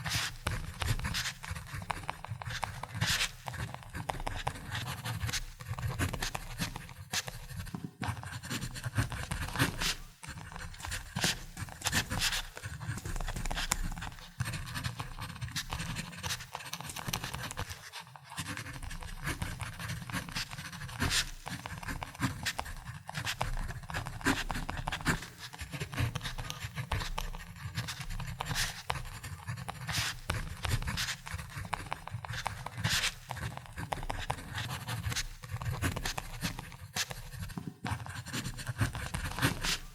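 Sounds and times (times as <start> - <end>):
ballpoint pen scratching: 0.0 - 39.9.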